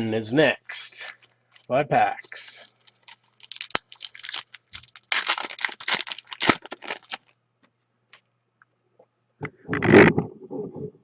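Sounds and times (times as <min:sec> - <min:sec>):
wrapper tearing and crinkling: 0:02.2 - 0:07.4.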